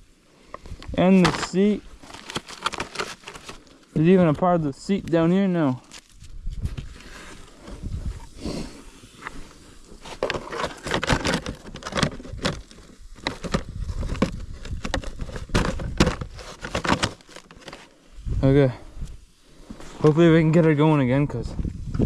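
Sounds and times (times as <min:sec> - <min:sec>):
wind rumble on microphone: 0:06.2 - 0:07.0, 0:07.7 - 0:08.4, 0:13.6 - 0:16.0, 0:18.2 - 0:19.2, 0:21.1 - 0:22.0
plastic parts knocking: 0:10.2 - 0:17.8.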